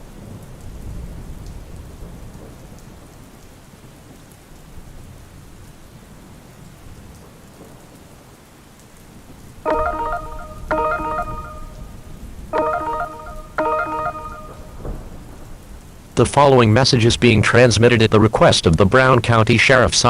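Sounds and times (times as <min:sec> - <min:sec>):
low rumble of thunder: 0:00.0 - 0:08.4, 0:14.5 - 0:17.4
steady rain: 0:00.0 - 0:20.0.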